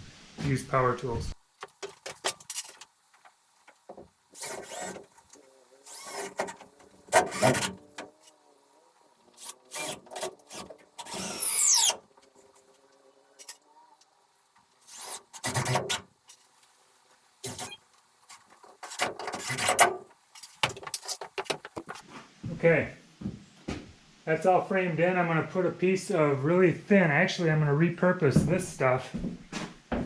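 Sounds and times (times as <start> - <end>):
power tool whining: 3.9 - 12.5
lumber knocking and scraping: 18.3 - 22.0.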